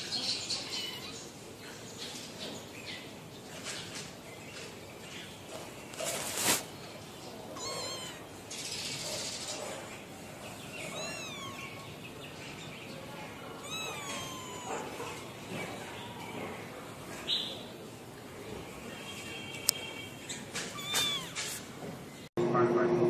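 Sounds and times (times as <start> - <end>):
cat meowing: 0.6 - 1.2, 7.5 - 8.4, 10.8 - 11.9, 13.6 - 15.2, 20.6 - 21.6.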